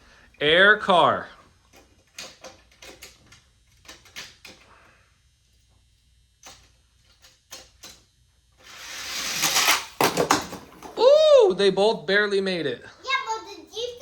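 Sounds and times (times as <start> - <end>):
plastic toy clicks: 2.1 - 3.2
toy cars rolling down track: 8.6 - 11.1.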